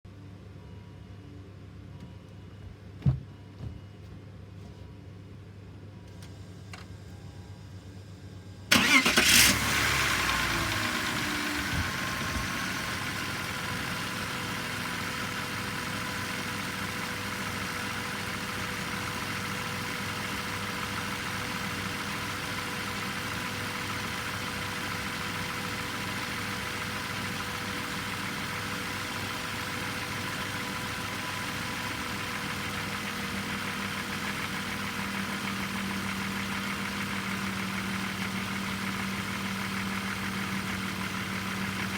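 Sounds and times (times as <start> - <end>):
car engine cranking and idling: 8.7 - 41.9.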